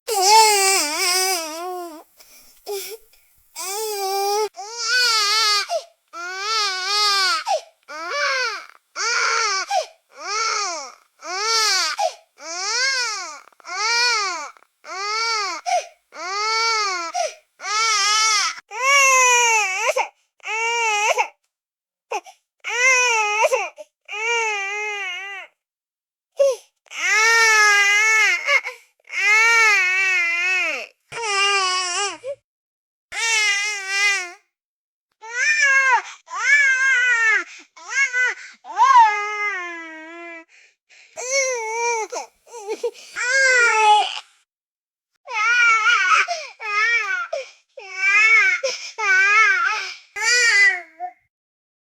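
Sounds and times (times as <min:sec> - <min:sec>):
baby crying: 0:00.1 - 0:02.0, 0:03.6 - 0:21.2, 0:33.2 - 0:34.4, 0:45.3 - 0:51.1.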